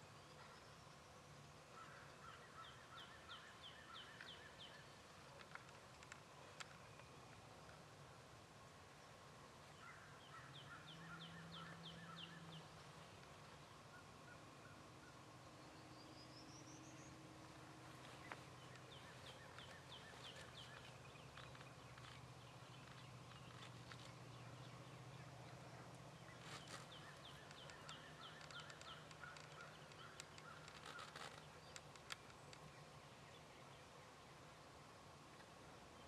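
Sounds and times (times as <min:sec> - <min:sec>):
faint bird calls: 0:00.0 - 0:07.8, 0:09.0 - 0:34.4
sharp clicks: 0:26.4 - 0:32.7.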